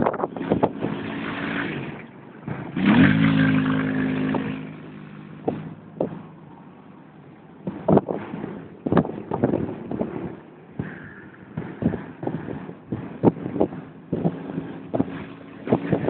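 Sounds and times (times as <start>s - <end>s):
quad bike engine revving: 0.4s - 5.8s.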